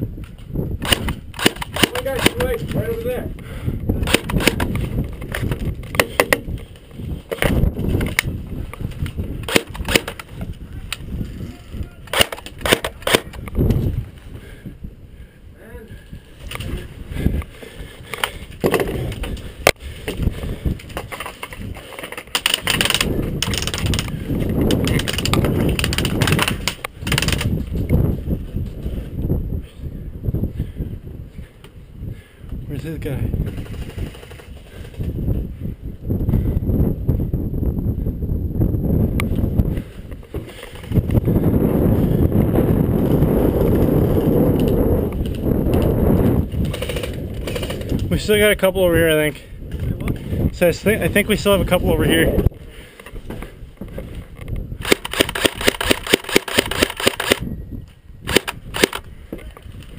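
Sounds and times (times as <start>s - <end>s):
wind buffeting microphone: 0.0s - 59.9s
gear rustling and clattering: 18.1s - 27.9s, 46.5s - 48.2s.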